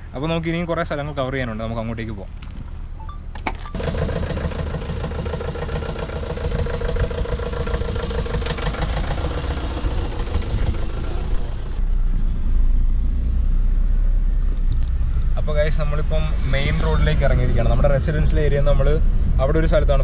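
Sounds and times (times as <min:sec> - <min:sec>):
road noise: 0:00.0 - 0:20.0
vehicle engine running: 0:03.7 - 0:20.0
deep rumble: 0:03.8 - 0:20.0.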